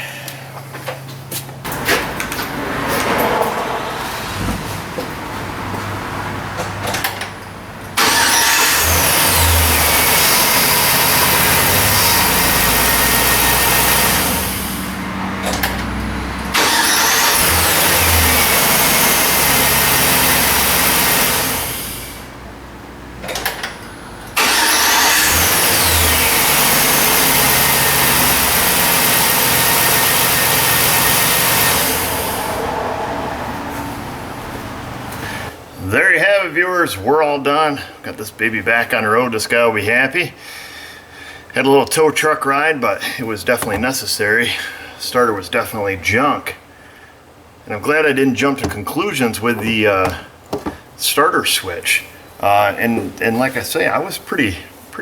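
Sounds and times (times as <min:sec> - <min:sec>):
truck engine cranking and starting: 0:01.6 - 0:35.6.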